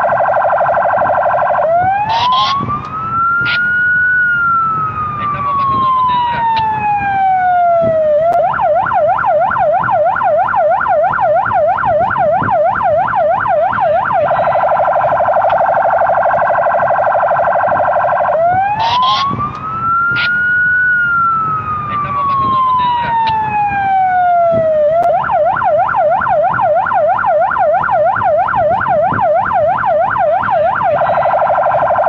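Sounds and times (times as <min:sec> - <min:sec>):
police siren wailing and yelping: 0:00.0 - 0:32.0.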